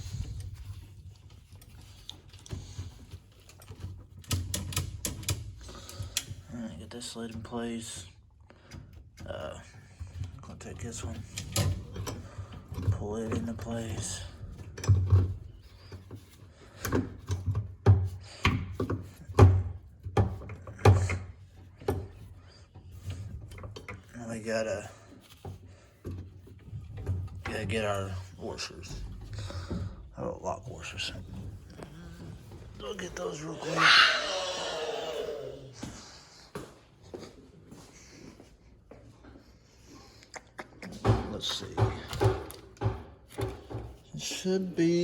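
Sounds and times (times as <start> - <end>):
clunks and knocks with thuds: 41.0 - 44.0.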